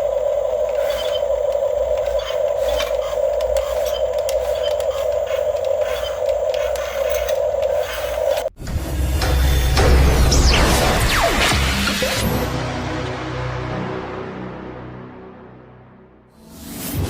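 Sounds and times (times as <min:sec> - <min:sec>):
small electric motors whining: 0:00.0 - 0:08.5.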